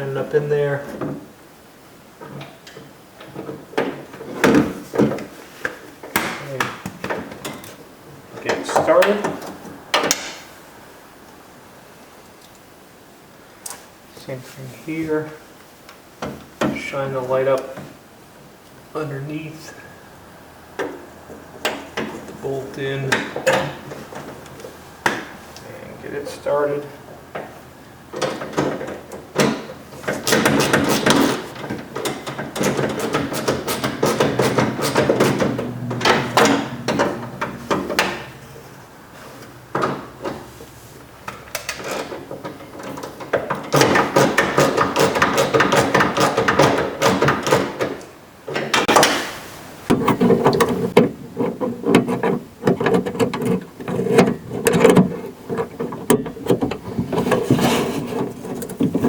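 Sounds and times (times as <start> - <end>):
tools knocking: 28.2 - 38.4, 41.3 - 48.0
hand ratchet clicking: 32.0 - 37.0, 43.0 - 47.8.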